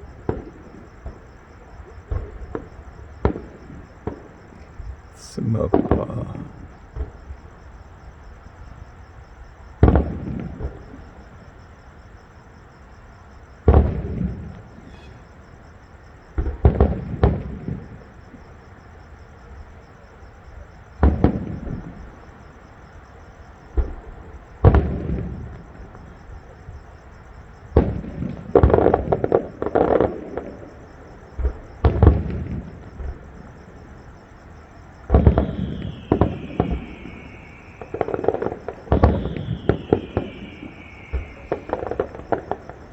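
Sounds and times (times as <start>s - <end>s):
fireworks booming: 5.2s - 7.4s, 31.4s - 33.8s, 34.9s - 42.9s
descending firework whistle: 35.0s - 42.9s.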